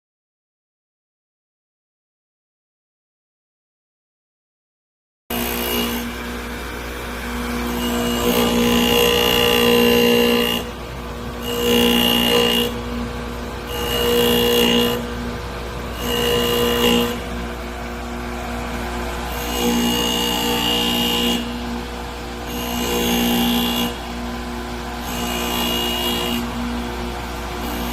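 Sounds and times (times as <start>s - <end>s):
drill bit grinding hiss: 5.3s - 21.8s, 25.0s - 27.9s
grinder motor hum: 5.3s - 27.9s.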